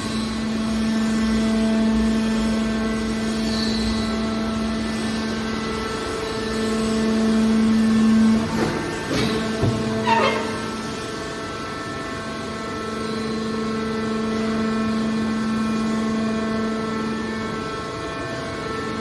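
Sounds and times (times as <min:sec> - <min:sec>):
metal clanks: 0:08.3 - 0:11.0.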